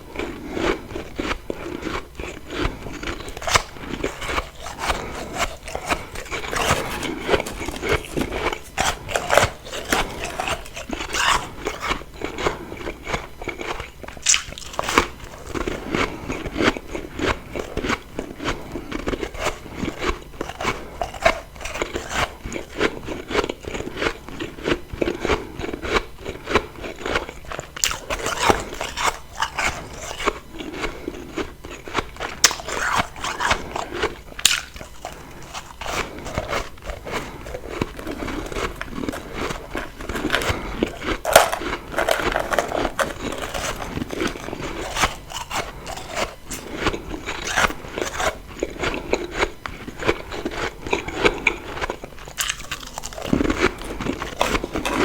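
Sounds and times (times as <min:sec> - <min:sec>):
chewing crunchy frost: 0:00.0 - 0:55.0.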